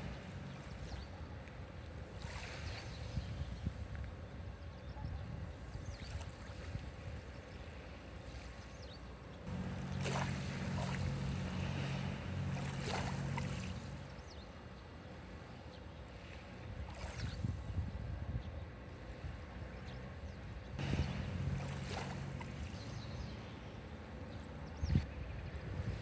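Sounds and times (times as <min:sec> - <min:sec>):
wind rumble on microphone: 0:00.0 - 0:14.4, 0:16.2 - 0:26.0
waves washing on shore: 0:01.7 - 0:03.2, 0:09.4 - 0:14.2, 0:20.8 - 0:23.9
steady low hum: 0:09.4 - 0:15.4, 0:20.8 - 0:25.1.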